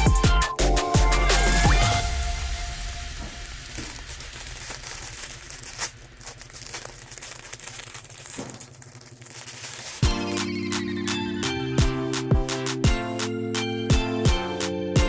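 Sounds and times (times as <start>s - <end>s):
music: 0.0s - 5.9s, 10.0s - 15.0s
packaging crinkling and rustling: 2.0s - 10.5s.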